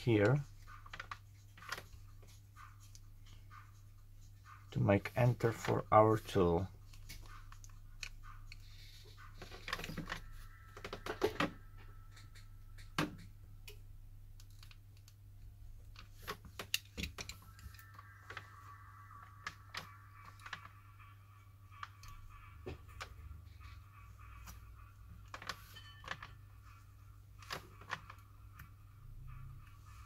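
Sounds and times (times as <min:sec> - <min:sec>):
low steady hum: 0:17.0 - 0:30.0.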